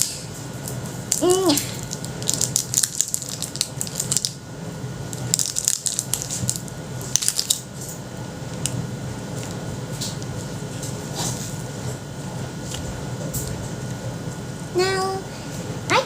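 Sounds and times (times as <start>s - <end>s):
foam clay crinkly crackling: 0.6s - 4.4s, 5.0s - 7.8s.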